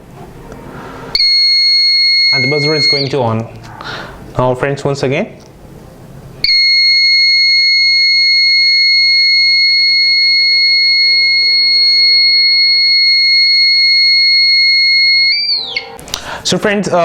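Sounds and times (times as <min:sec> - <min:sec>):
smoke alarm buzzer steady tone: 0:01.1 - 0:03.2, 0:06.4 - 0:16.0.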